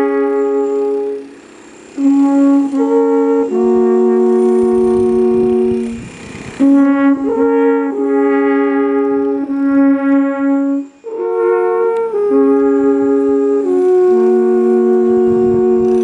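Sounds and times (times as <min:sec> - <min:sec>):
alphorns playing in harmony: 0:00.0 - 0:16.0.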